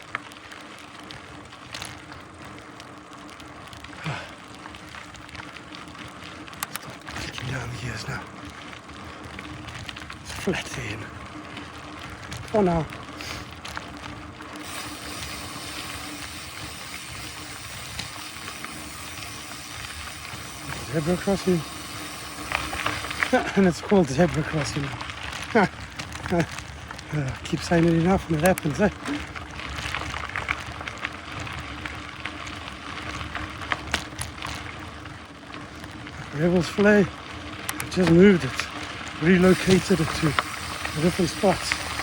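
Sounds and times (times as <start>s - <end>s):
bike tyre and chain noise: 0.0s - 42.0s
small clicks and ticks: 0.0s - 42.0s
freehub ratchet clicking: 14.6s - 23.8s, 39.2s - 42.0s.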